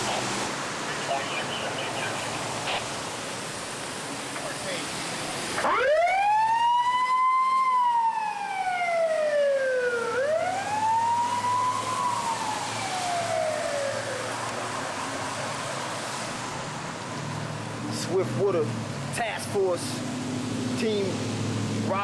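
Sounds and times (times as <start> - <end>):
emergency vehicle siren wailing: 5.5 - 17.9.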